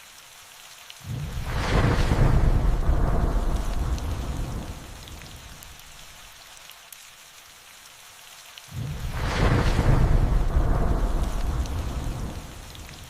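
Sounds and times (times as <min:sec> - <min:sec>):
steady rain falling: 0:00.0 - 0:13.0
thunder rumbling: 0:01.0 - 0:06.1, 0:08.7 - 0:13.0.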